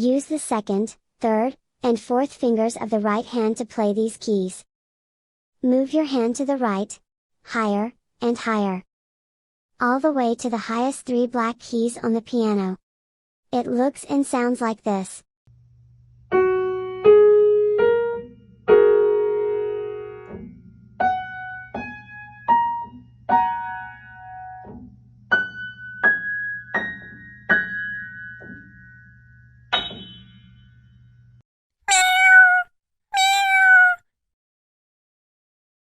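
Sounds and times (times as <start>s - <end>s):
cat meowing: 31.9s - 34.0s.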